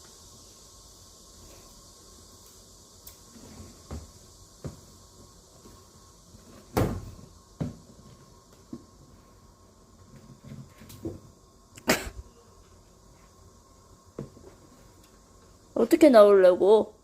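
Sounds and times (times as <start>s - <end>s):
trash can knocks and thumps: 6.6s - 7.9s.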